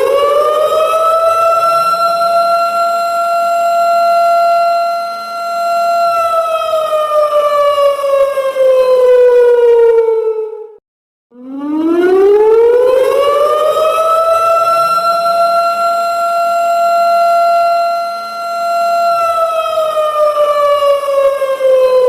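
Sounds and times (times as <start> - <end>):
siren wailing: 0.0 - 22.0.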